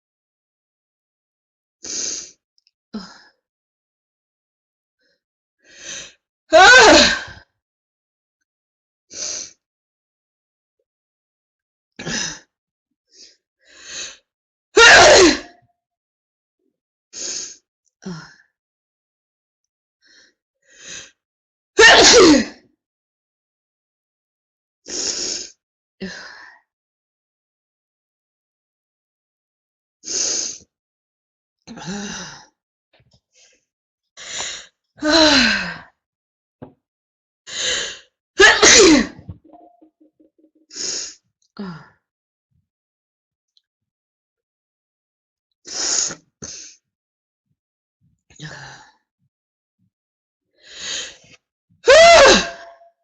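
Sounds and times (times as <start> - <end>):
woman sneezing: 21.8 - 22.4, 38.4 - 39.4.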